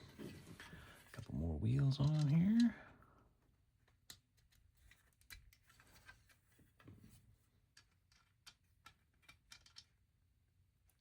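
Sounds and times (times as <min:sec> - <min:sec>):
plastic toy bricks clicking: 0:02.0 - 0:02.7, 0:07.7 - 0:10.0.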